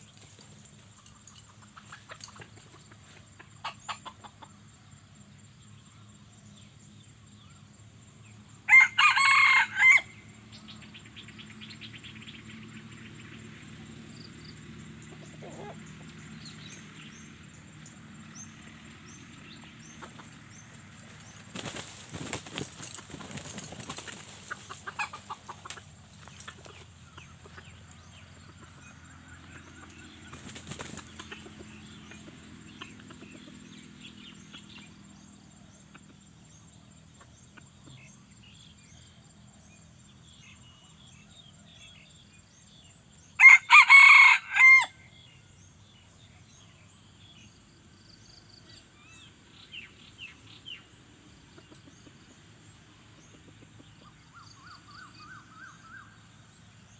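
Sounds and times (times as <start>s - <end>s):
rooster crowing: 8.7s - 10.2s, 43.4s - 45.0s
faint rustles: 17.8s - 28.8s.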